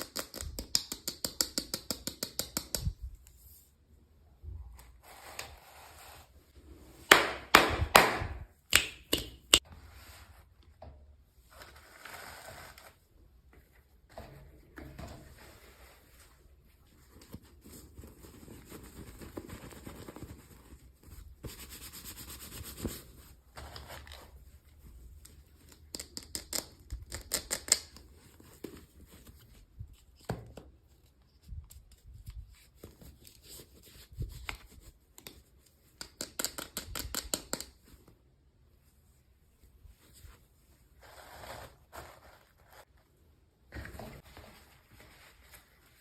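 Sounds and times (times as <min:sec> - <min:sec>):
toy packaging rustling and scraping: 0:40.9 - 0:43.2.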